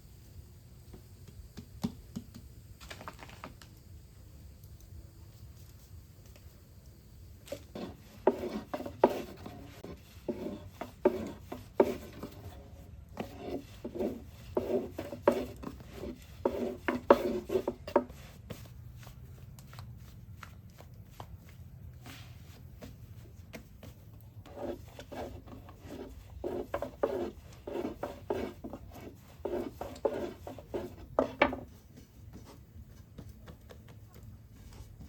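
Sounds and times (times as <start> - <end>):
rubbing strokes: 7.5 - 19.2, 21.1 - 32.7.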